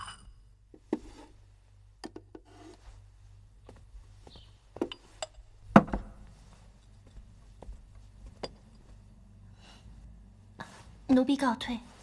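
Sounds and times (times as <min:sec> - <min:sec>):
light knocks and clinks: 0:08.2 - 0:09.0.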